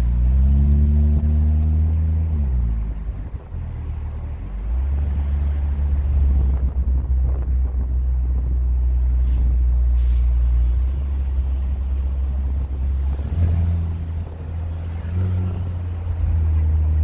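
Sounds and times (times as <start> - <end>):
car exhaust deep drone: 0.0 - 17.0
short hisses: 9.2 - 10.4.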